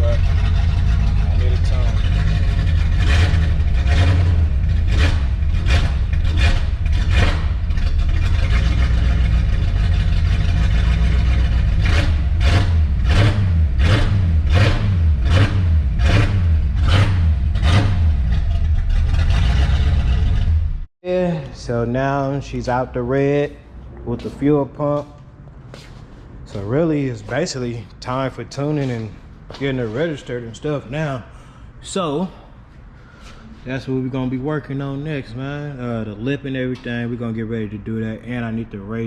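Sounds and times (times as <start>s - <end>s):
car engine idling with lope: 0.0s - 20.5s.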